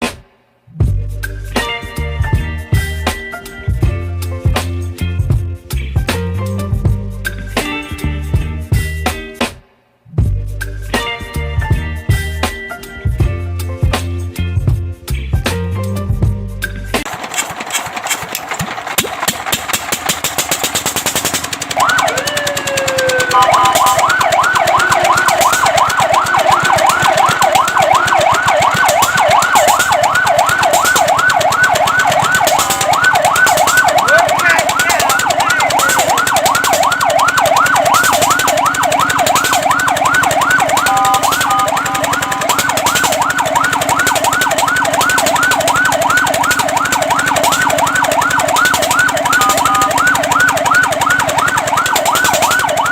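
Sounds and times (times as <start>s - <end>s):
engine running rhythmically: 0.8s - 9.0s, 10.2s - 52.9s
siren wailing and yelping: 21.7s - 52.9s.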